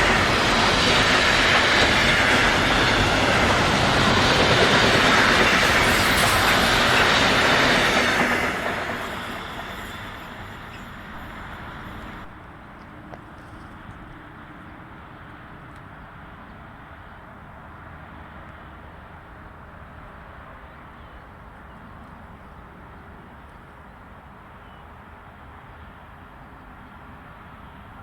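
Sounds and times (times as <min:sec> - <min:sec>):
train wheels rolling on rails: 0:00.0 - 0:14.4.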